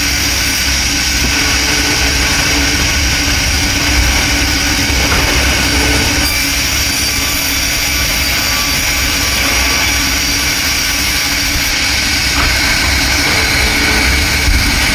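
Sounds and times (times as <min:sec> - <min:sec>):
sawmill machinery rumbling: 0:00.0 - 0:14.9.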